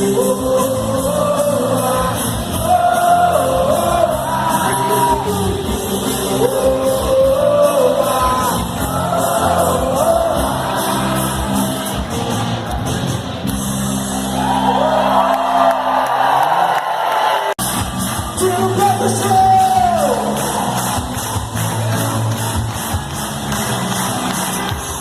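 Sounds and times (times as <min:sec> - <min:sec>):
crowd shouting: 0:01.1 - 0:05.6, 0:07.2 - 0:12.9.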